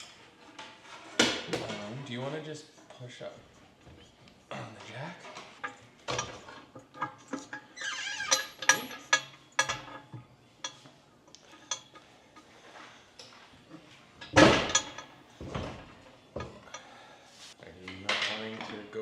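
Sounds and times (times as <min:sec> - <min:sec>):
metallic clinks knocks and creaks: 0:00.0 - 0:17.0.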